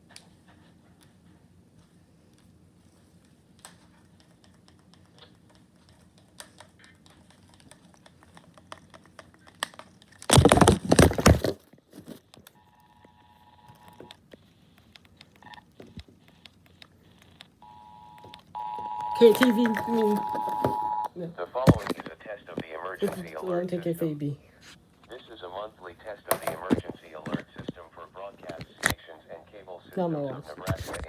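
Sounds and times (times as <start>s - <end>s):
two-tone alert signal: 17.6s - 21.1s.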